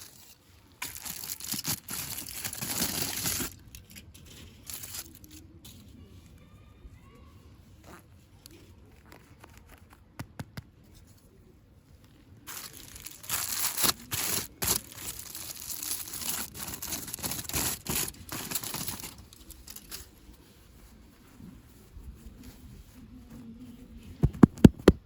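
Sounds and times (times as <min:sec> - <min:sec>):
packaging crinkling and tearing: 0:00.0 - 0:05.3, 0:12.5 - 0:20.0.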